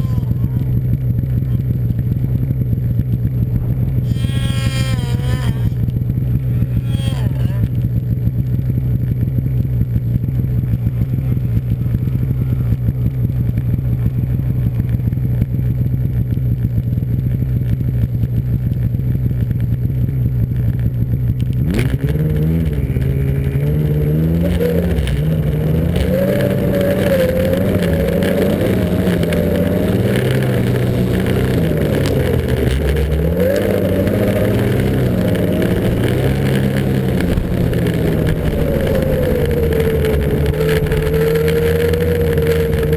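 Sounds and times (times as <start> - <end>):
snowmobile engine revving: 0.0 - 9.0, 21.6 - 42.9.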